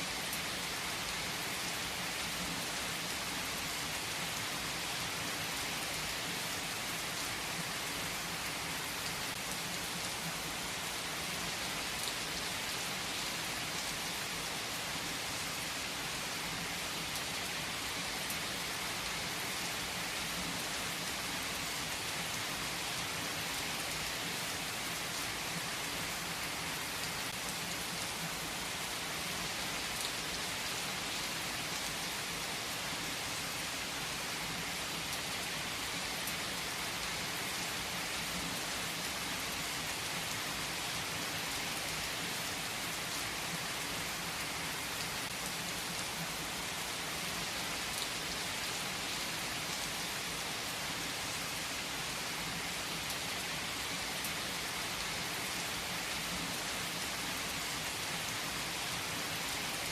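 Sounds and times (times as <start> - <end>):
steady rain hiss: 0.0 - 59.9.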